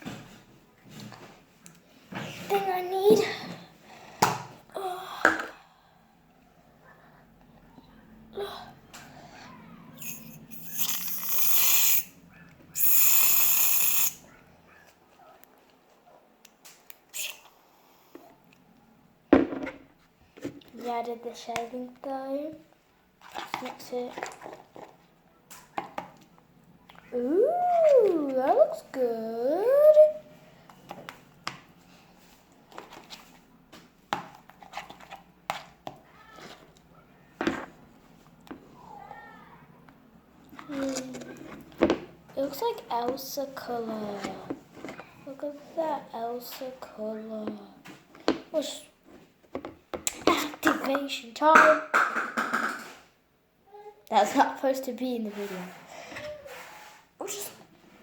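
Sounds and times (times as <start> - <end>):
aerosol can spraying: 10.0 - 12.1, 12.8 - 14.2.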